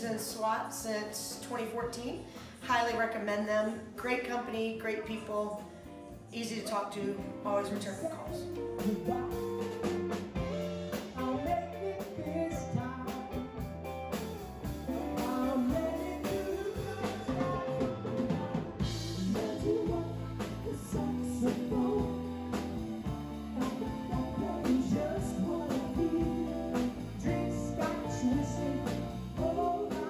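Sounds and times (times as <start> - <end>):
guitar and drums music: 5.1 - 30.0
person singing: 8.2 - 13.4, 14.8 - 30.0.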